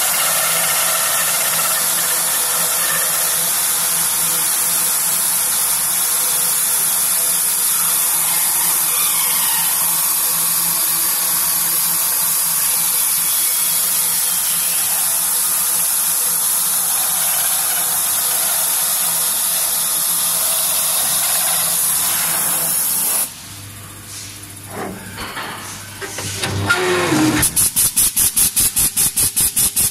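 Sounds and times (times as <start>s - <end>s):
router spindle hissing whir: 0.0s - 23.4s.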